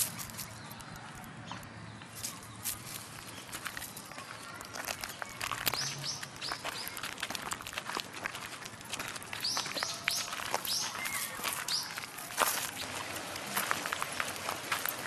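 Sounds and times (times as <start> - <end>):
bird chirping: 0.0 - 7.1, 9.4 - 13.2
footsteps: 0.0 - 15.0.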